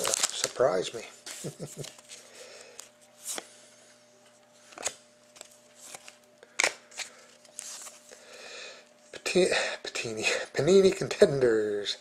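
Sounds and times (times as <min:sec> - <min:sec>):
card pack rustling and clicking: 0:00.0 - 0:03.4.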